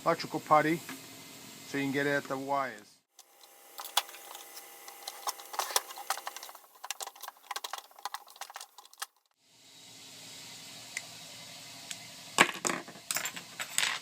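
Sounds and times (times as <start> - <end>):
hand tool scraping putty: 3.2 - 9.1.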